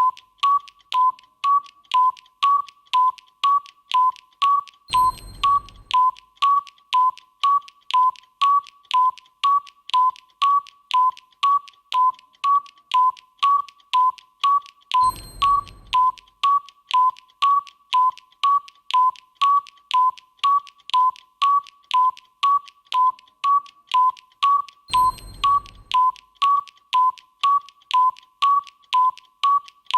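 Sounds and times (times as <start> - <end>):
electronic tick-tock beeps: 0.0 - 29.9
chime with low thump: 4.9 - 6.1, 15.0 - 16.2, 24.9 - 26.1.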